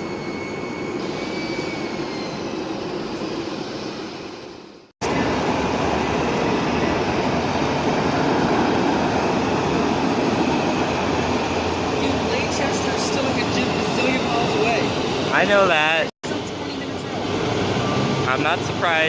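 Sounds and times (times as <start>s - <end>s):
faint high whine: 0.0s - 19.0s
jet engines roaring: 0.0s - 19.0s.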